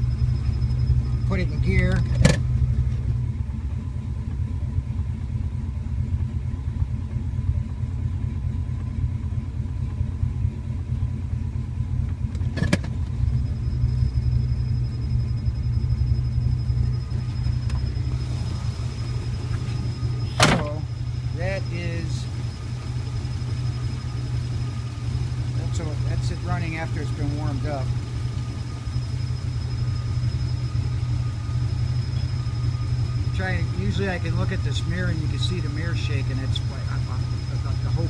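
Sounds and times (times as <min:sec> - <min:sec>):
car engine idling roughly: 0:00.0 - 0:38.0.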